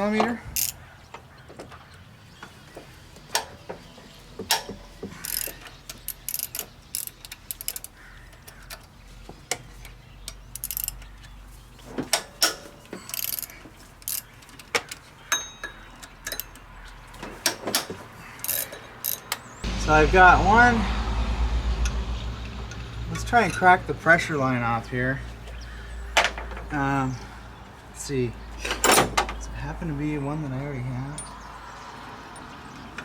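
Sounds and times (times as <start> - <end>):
metal tools clinking: 0.2 - 0.8, 4.5 - 8.0, 10.3 - 11.3, 12.0 - 19.4, 28.6 - 29.3, 31.1 - 31.4
ratchet wrench clicking: 0.6 - 0.8, 5.2 - 8.8, 10.3 - 11.1, 12.4 - 14.7, 18.4 - 19.4.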